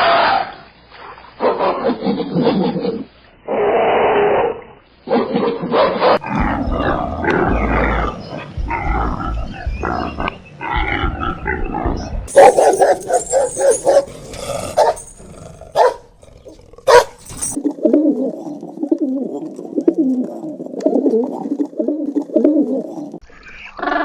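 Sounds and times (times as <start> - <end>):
animal roars and growls: 3.5 - 11.9.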